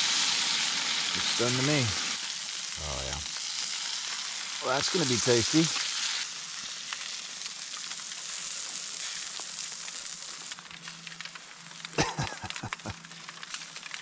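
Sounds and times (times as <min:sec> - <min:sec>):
steak sizzling in a frying pan: 0:00.0 - 0:14.0
person laughing: 0:12.0 - 0:13.0.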